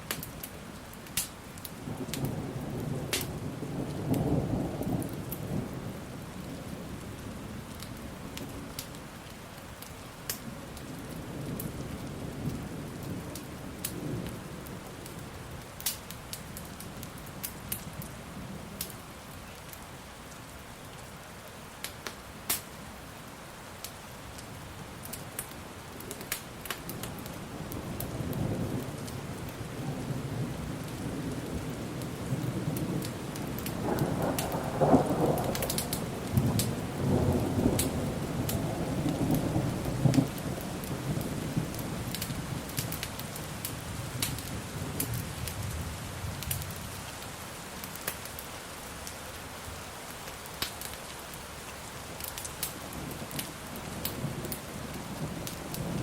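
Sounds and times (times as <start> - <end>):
wood fire crackling: 0.0 - 2.4, 3.1 - 3.3, 7.7 - 18.1, 21.8 - 22.7, 23.8 - 29.7, 30.8 - 56.0
steady rain: 0.0 - 56.0
thunder rumbling: 27.1 - 47.0.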